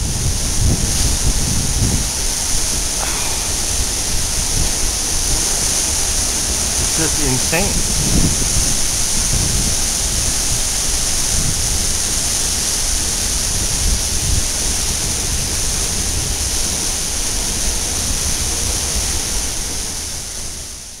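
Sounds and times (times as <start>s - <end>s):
wind rumbling on microphone: 0.0s - 5.6s
waterfall rushing: 2.5s - 8.0s.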